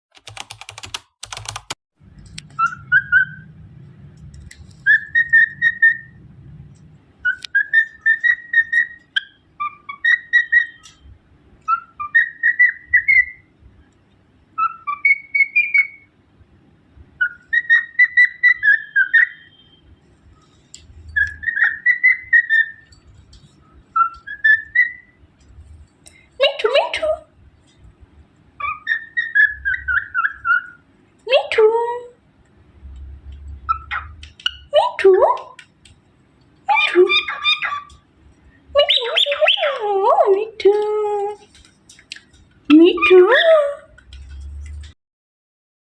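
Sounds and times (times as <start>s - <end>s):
cockatiel whistling: 2.6s - 3.4s, 4.8s - 6.2s, 7.2s - 11.0s, 11.7s - 13.5s, 14.6s - 16.1s, 17.2s - 19.8s, 21.1s - 22.9s, 24.0s - 25.2s, 28.6s - 30.8s.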